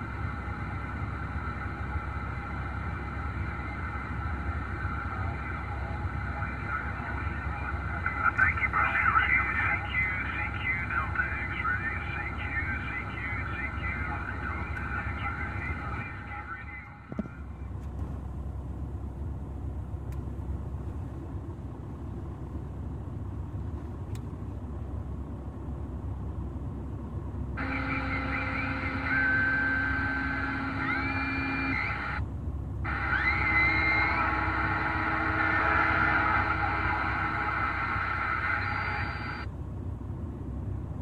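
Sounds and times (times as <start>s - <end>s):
radio whistling tones: 1.4s - 17.1s, 27.6s - 32.2s, 32.9s - 39.5s
radio static hiss: 2.6s - 17.5s, 27.6s - 32.2s, 32.9s - 39.5s.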